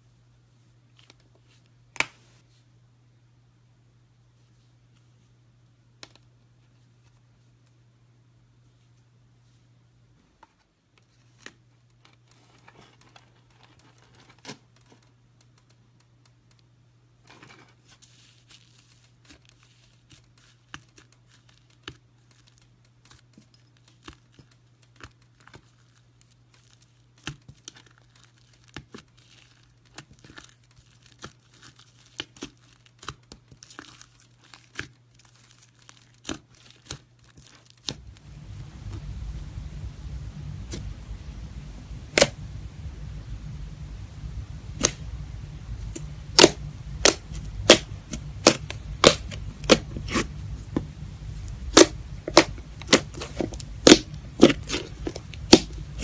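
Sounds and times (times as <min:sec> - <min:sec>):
low electrical hum: 0:00.0 - 0:56.0
slime crackling and popping: 0:18.1 - 0:38.4, 0:44.7 - 0:45.2, 0:45.8 - 0:56.0.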